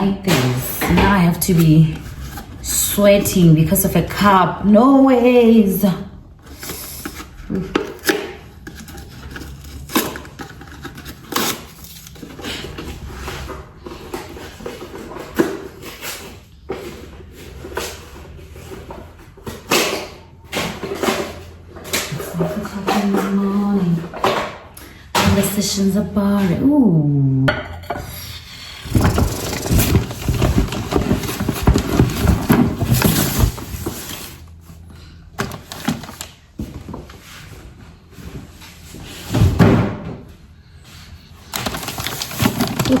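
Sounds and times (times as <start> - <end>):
household items knocking and clattering: 13.4 - 25.8, 28.8 - 34.3, 41.5 - 43.0
packaging rustling and knocking: 28.8 - 34.5, 41.5 - 43.0.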